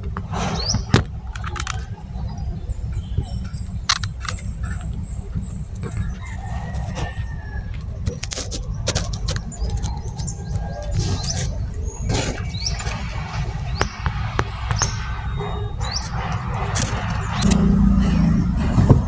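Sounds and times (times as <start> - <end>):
scattered clicks: 0.0 - 17.8
bird chirping: 0.0 - 18.5
steady low rumble: 0.0 - 19.0.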